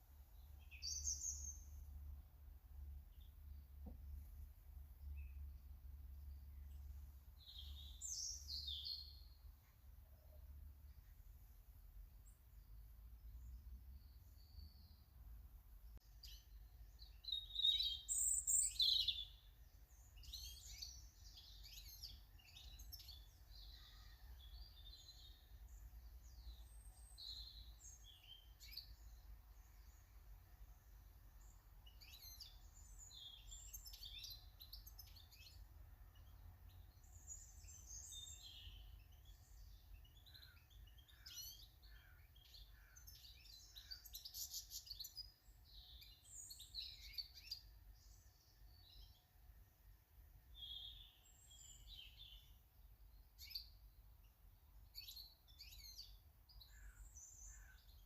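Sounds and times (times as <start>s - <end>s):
small birds chirping: 0.0s - 58.0s.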